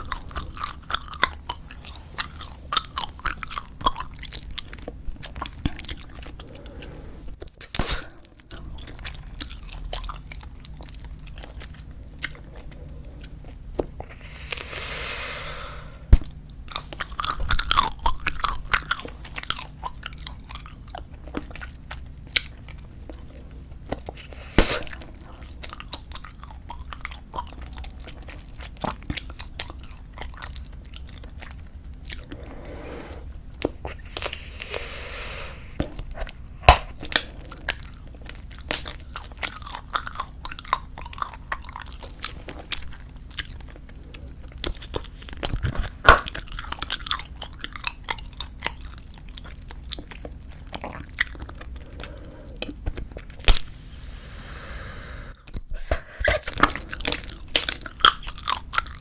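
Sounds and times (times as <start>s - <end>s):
bubblegum chewing smacks and clicks: 0.0s - 14.6s, 16.1s - 32.6s, 35.7s - 53.7s, 55.4s - 59.0s
breathy hiss: 14.0s - 16.1s, 24.2s - 25.3s, 32.2s - 35.8s, 53.6s - 55.4s.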